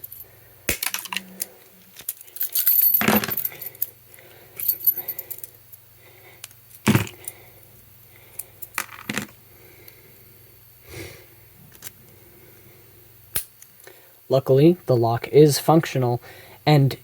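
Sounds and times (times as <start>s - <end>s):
keys and padlock clinking: 0.8s - 4.0s, 4.6s - 5.6s.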